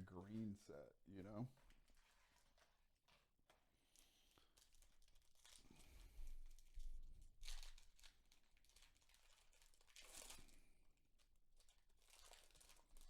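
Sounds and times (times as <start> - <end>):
wrapper crinkling and tearing: 1.6 - 5.9, 7.4 - 10.7, 11.3 - 13.0.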